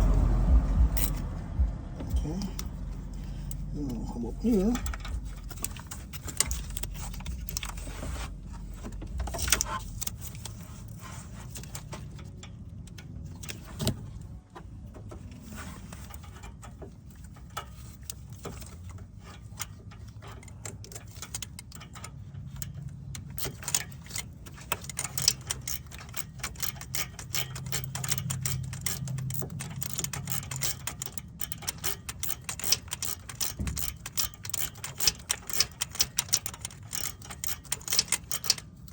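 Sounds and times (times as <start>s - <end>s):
low steady hum: 0.0s - 20.1s.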